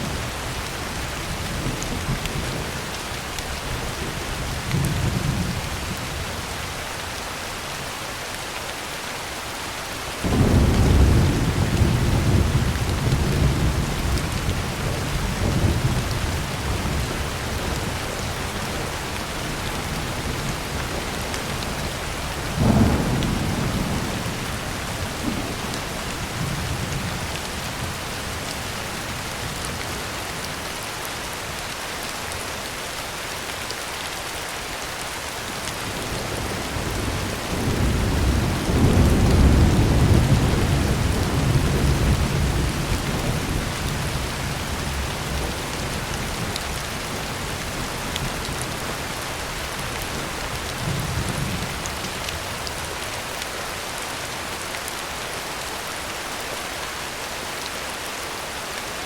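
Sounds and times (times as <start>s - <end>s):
heavy rain on a tin roof: 0.0s - 59.0s
thunder rolling: 22.5s - 24.4s.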